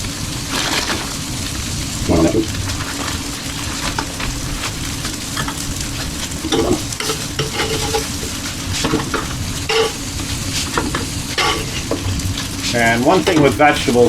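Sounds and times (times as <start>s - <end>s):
vegetables sizzling on griddle: 0.0s - 14.0s
spatula scraping steel plate: 6.4s - 13.4s.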